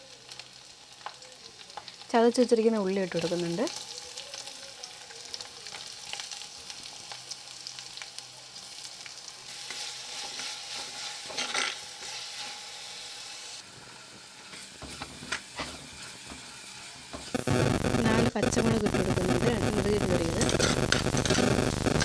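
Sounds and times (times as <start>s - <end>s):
onion sizzling in oil: 0.0s - 22.0s
spoon scraping pan: 9.6s - 12.6s, 14.5s - 16.5s, 20.4s - 22.0s.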